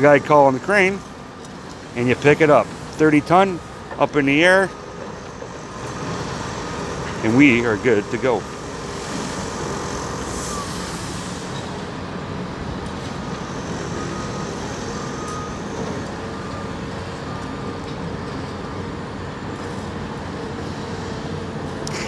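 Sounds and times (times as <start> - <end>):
heavy machinery running: 0.0 - 22.0.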